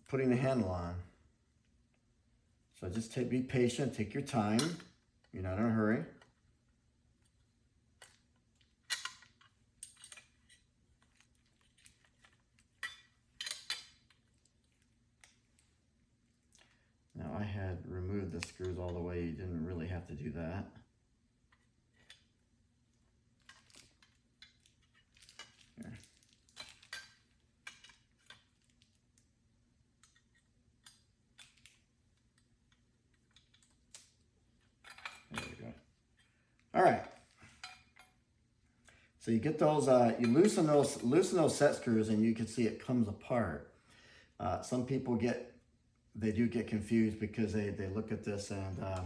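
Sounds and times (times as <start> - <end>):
small metal parts clicking: 8.9 - 14.2.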